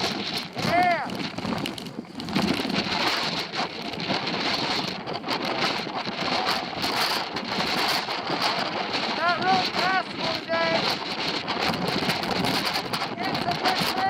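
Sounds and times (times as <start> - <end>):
wind buffeting microphone: 0.0 - 14.0.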